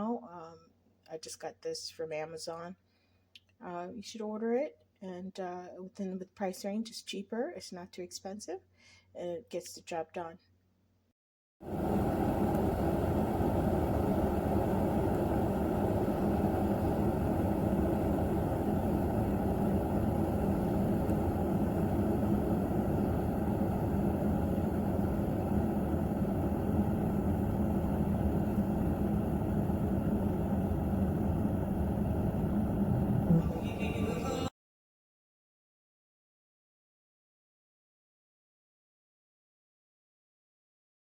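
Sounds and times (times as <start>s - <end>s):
electric kettle heating water: 11.6s - 34.5s.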